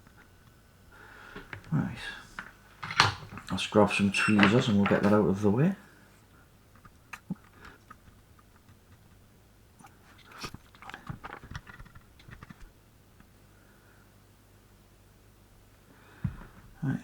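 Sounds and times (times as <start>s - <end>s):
small tools clicking and tapping: 2.4s - 5.2s.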